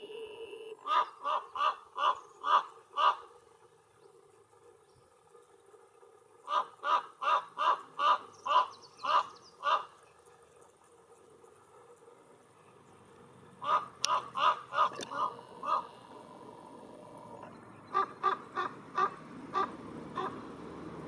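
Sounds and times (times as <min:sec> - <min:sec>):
raven croaking: 0:00.0 - 0:10.1, 0:13.1 - 0:21.0.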